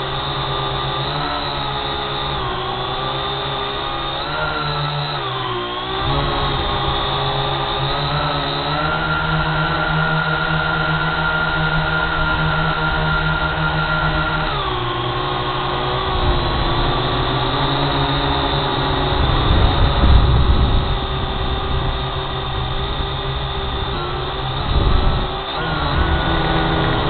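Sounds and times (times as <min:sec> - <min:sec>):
drone propellers whining: 0:00.0 - 0:27.0
low rumble: 0:19.1 - 0:27.0.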